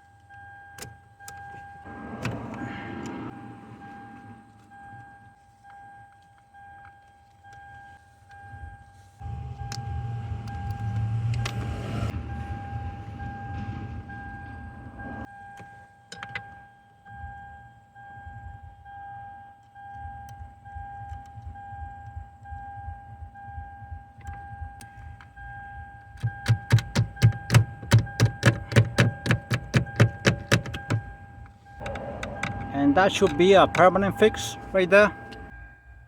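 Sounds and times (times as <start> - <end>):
car warning chime pulsing: 0.0 - 36.0.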